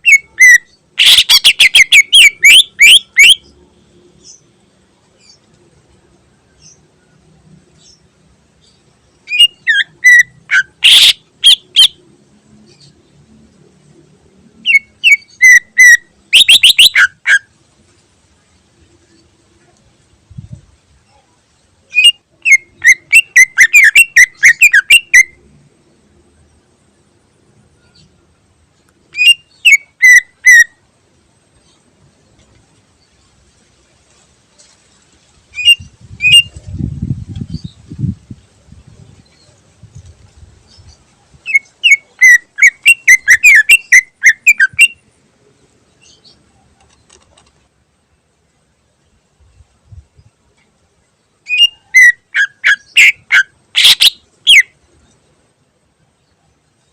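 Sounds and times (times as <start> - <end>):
bird whistling song: 0.0 - 3.4, 9.3 - 12.0, 14.6 - 17.5, 21.9 - 25.4, 29.2 - 30.8, 35.6 - 36.7, 40.7 - 45.0, 51.5 - 54.7
bird singing sharp whistled notes: 51.5 - 54.7.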